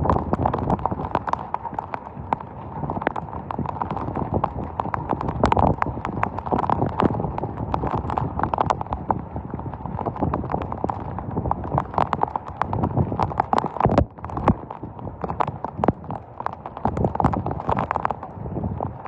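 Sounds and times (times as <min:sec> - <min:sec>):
heavy rain on hard surface: 0:00.0 - 0:19.0.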